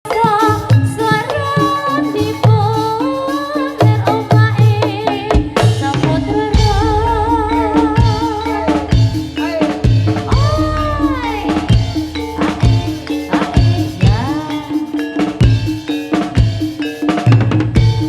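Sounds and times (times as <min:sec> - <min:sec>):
drum rhythm: 0:00.0 - 0:18.0
sliding wavering melody: 0:06.6 - 0:17.2.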